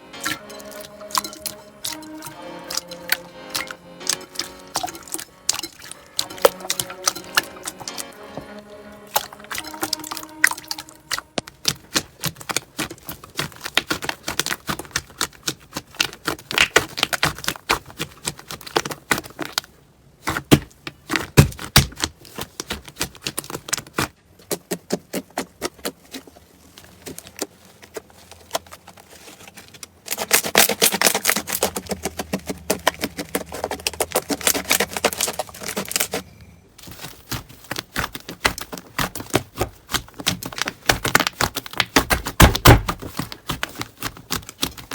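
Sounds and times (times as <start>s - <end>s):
hands squishing slime: 0.2s - 44.9s
crackling clicks and small pops: 11.4s - 19.7s.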